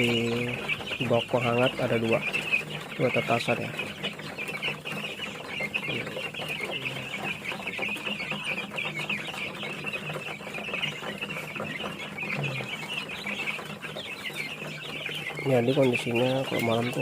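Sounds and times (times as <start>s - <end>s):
chicks peeping: 0.0s - 17.0s.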